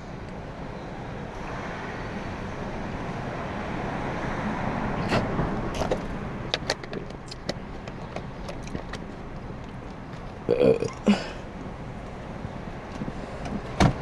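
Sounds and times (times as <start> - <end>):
vehicle road noise rumble: 0.0 - 14.0
sharp clicks and knocks: 5.8 - 9.8.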